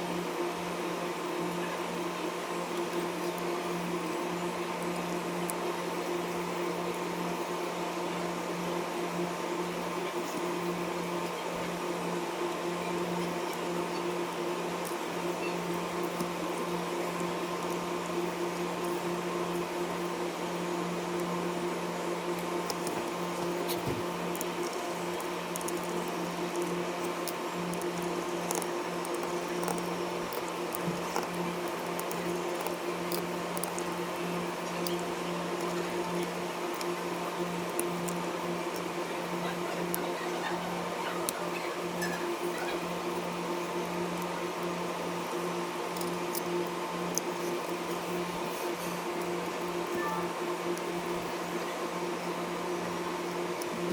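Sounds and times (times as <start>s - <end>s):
small fan humming: 0.0s - 53.9s
handling clicks and scrapes: 22.3s - 39.0s.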